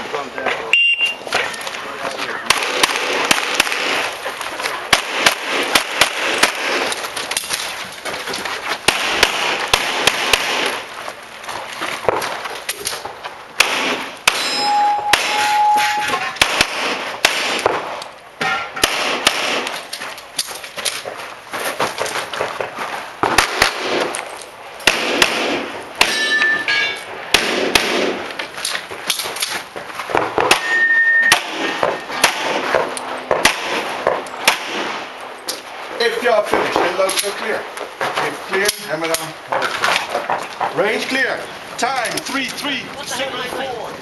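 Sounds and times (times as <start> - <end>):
handgun fire: 2.5 - 4.1, 4.9 - 7.0, 8.9 - 10.8, 13.6 - 17.9, 18.8 - 19.8, 23.2 - 24.2, 24.8 - 26.4, 27.3 - 28.2, 30.4 - 35.1
bullets clanging on steel targets: 13.7 - 16.6, 18.4 - 21.1, 26.0 - 27.1, 30.4 - 35.7.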